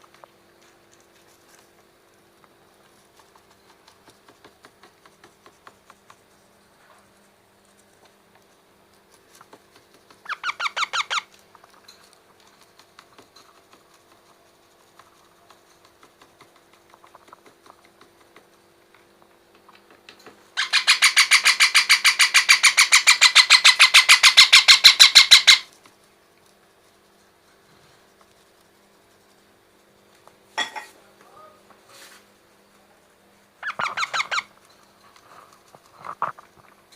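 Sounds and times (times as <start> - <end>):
faint ticks and scratches: 0.0 - 20.5, 25.7 - 36.9
parrot chick calling: 10.2 - 11.3, 20.6 - 25.7, 33.6 - 34.5.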